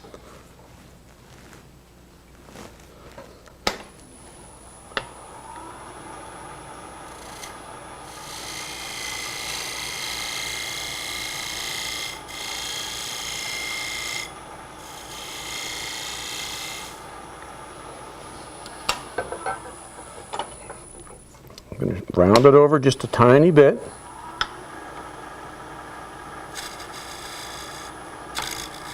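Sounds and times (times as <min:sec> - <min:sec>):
wood lathe humming: 0:04.0 - 0:21.3, 0:23.2 - 0:28.9
turning tool shaving wood: 0:04.4 - 0:20.2, 0:23.9 - 0:28.9.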